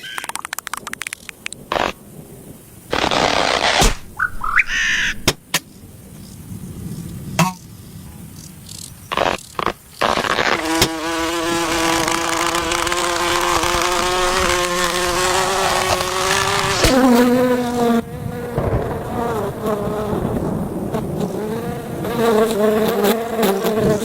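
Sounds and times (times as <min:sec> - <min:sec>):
buzzing drone: 0:09.1 - 0:24.0.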